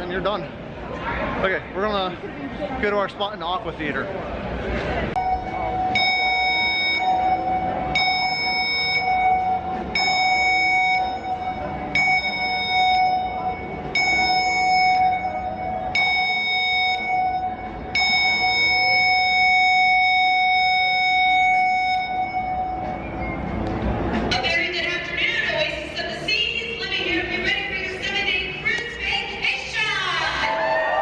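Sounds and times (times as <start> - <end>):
steady low tone: 4.2 - 24.9
emergency alarm tones: 5.2 - 23.6.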